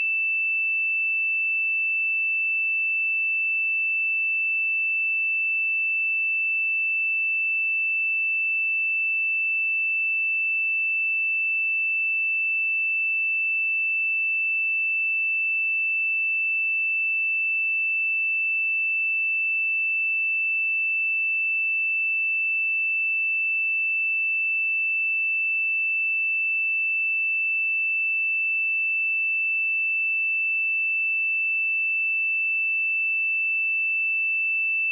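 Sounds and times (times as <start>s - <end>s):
sine-wave test tone: 0.0s - 34.9s.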